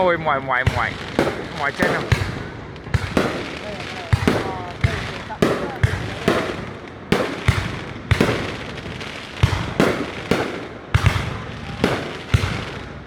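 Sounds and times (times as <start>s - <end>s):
fireworks bangs with rumble: 0.0s - 13.0s.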